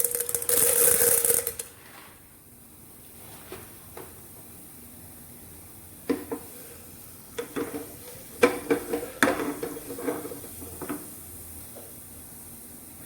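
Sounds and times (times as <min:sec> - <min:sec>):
popcorn kernels clinking on metal pan: 0:00.0 - 0:01.7.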